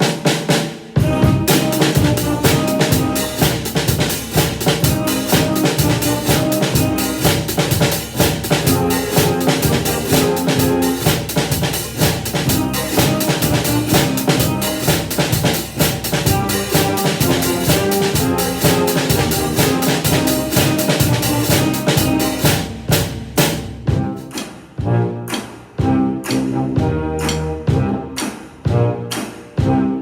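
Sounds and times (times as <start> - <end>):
bass drum and snare beat: 0.0 - 29.9
sticks on closed hi-hat: 1.5 - 24.7.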